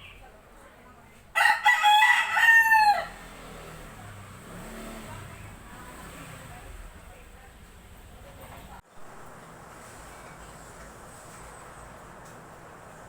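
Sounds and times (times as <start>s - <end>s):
rooster crowing: 1.4s - 3.4s.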